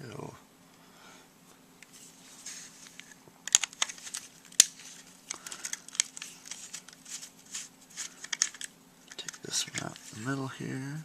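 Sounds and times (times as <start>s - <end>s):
plastic scraping: 2.4s - 10.4s
plastic parts clicking: 2.9s - 10.2s.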